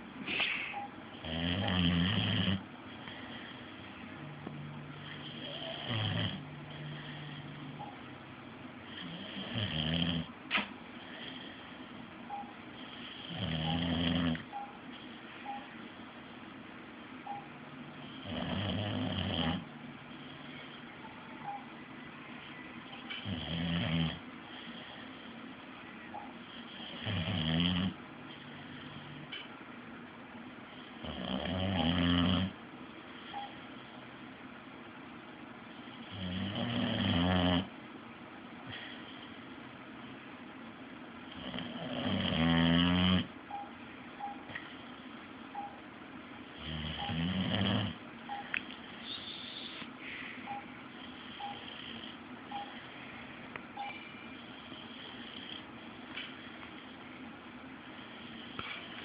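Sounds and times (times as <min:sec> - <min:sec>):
dog snoring: 0:01.1 - 0:03.8, 0:05.0 - 0:07.8, 0:08.8 - 0:10.3, 0:11.0 - 0:11.7, 0:12.8 - 0:15.0, 0:18.0 - 0:20.8, 0:23.2 - 0:25.3, 0:26.4 - 0:29.3, 0:30.7 - 0:32.6, 0:35.9 - 0:37.7, 0:41.3 - 0:43.4, 0:46.5 - 0:48.0, 0:51.0 - 0:52.8, 0:54.4 - 0:55.7.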